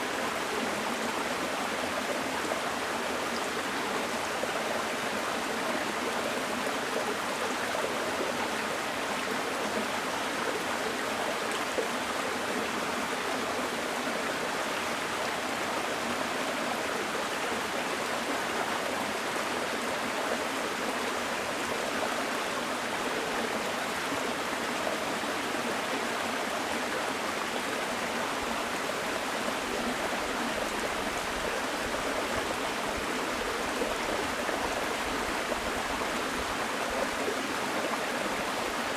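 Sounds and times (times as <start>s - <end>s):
stream babbling over rocks: 0.0s - 38.9s.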